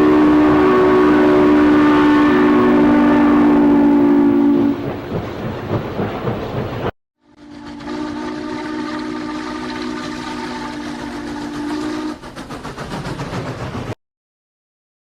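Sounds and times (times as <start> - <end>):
steam train whistle: 0.0 - 4.9, 7.2 - 12.4
rhythmic clatter: 12.2 - 14.0.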